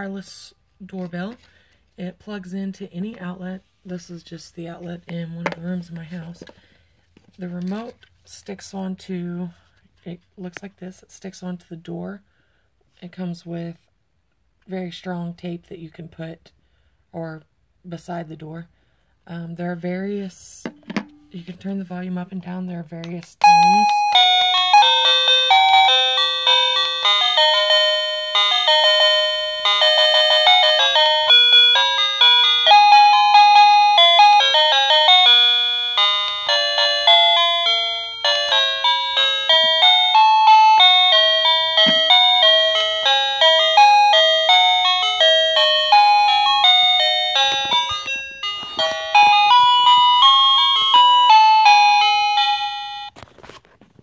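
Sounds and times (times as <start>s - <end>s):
doorbell electronic chime melodies: 23.4s - 53.1s.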